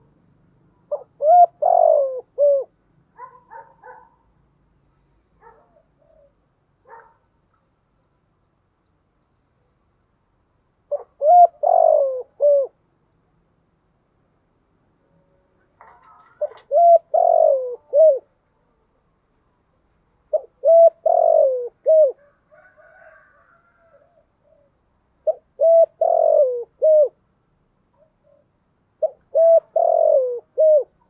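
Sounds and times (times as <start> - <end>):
dove cooing: 0.8 - 4.1, 10.9 - 12.8, 15.8 - 18.4, 20.3 - 27.2, 28.0 - 31.0.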